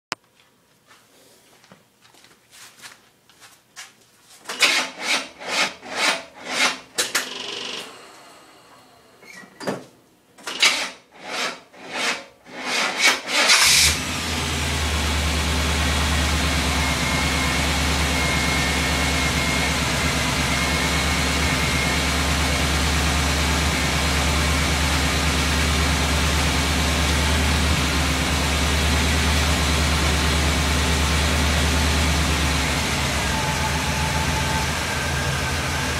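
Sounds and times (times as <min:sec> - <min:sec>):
engine cranking: 0:12.7 - 0:14.1
engine idling: 0:13.6 - 0:35.9.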